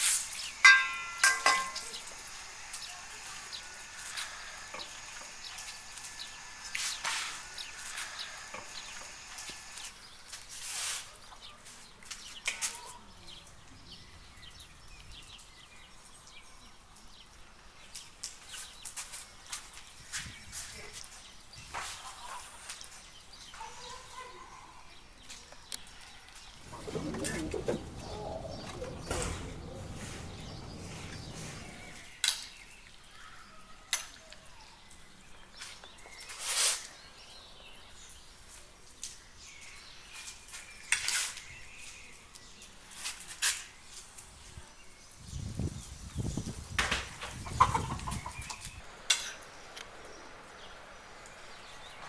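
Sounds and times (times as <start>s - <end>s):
chickens clucking: 26.6s - 32.0s, 46.9s - 50.5s
low rough noise: 26.6s - 32.2s.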